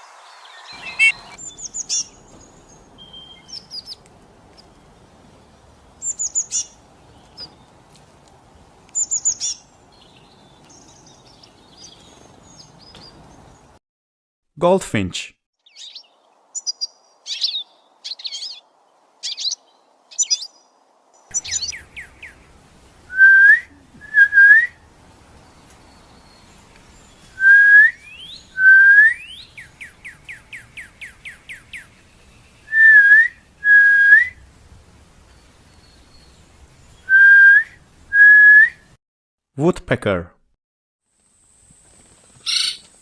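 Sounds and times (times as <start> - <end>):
rising bird chirps: 0.0 - 4.0, 4.6 - 7.7, 9.0 - 13.2, 15.6 - 24.8, 25.4 - 34.4, 35.4 - 39.0, 42.4 - 42.9
bird whistled notes: 0.2 - 2.2, 3.0 - 3.9, 23.1 - 24.7, 27.3 - 31.9, 32.7 - 34.4, 37.0 - 38.8
goldfinch twittering: 0.4 - 4.0, 15.7 - 18.6, 21.3 - 22.5.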